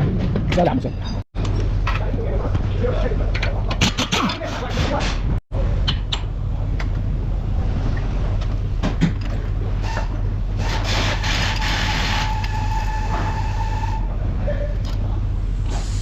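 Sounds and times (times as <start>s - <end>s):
steady low hum: 0.0s - 12.8s, 14.0s - 16.0s
hiss: 15.7s - 16.0s.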